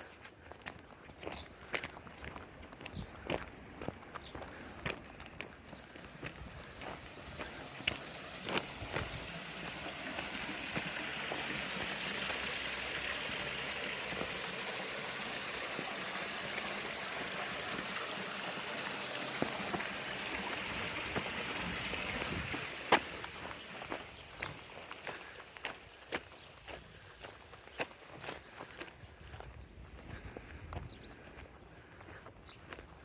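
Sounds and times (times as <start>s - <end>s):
footsteps: 0.0s - 14.4s, 15.3s - 29.5s
stream flowing: 5.4s - 27.5s.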